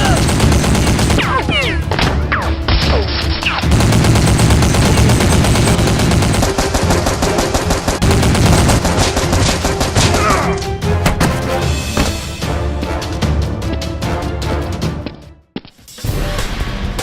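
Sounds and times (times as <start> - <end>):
rapid automatic gunfire: 0.0 - 1.3, 3.6 - 10.4.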